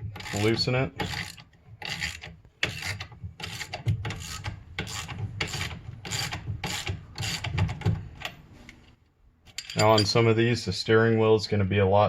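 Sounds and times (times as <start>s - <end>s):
ratchet wrench strokes: 0.0s - 7.6s.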